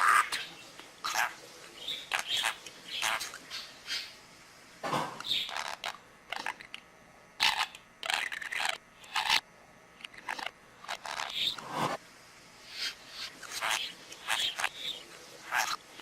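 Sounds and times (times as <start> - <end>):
budgerigar chattering: 12.8 - 15.8.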